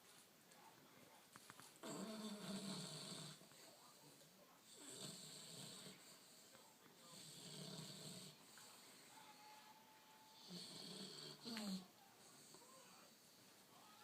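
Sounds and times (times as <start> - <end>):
dog snoring softly: 1.8 - 4.0, 4.6 - 9.2, 10.4 - 12.7.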